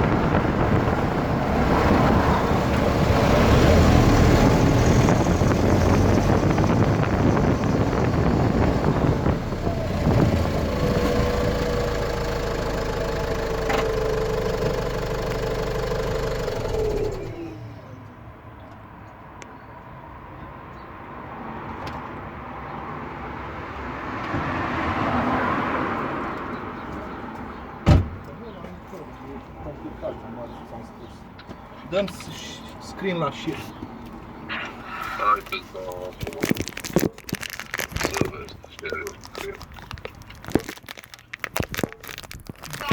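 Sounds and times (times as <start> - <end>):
car driveline whine: 0.0 - 18.1
road noise: 0.0 - 42.9.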